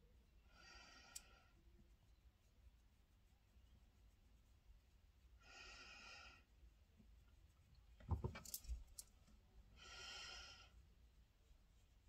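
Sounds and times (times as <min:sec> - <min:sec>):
soft breath: 0:00.3 - 0:01.9, 0:05.3 - 0:06.8, 0:09.6 - 0:11.1.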